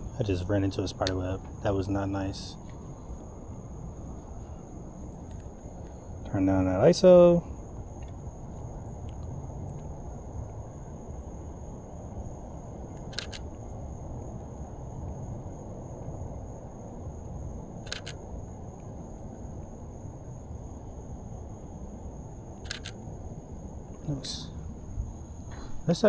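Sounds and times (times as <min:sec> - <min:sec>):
steady low rumble: 0:00.0 - 0:26.0
camera shutter double clicks: 0:13.0 - 0:13.5, 0:17.8 - 0:18.2, 0:22.6 - 0:23.1.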